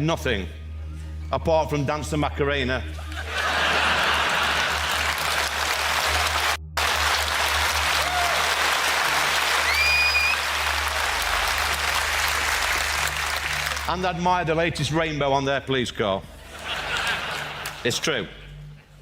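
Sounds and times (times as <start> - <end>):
audience applauding: 3.2 - 14.0, 16.7 - 17.9
rising whistle: 9.6 - 10.5.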